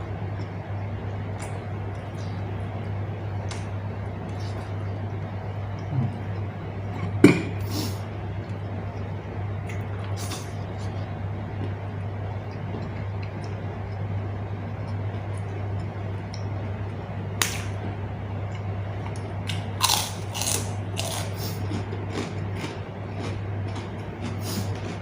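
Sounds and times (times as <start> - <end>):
low hum: 0.0 - 25.0
person chewing crunchy food: 12.5 - 16.5, 18.5 - 25.0.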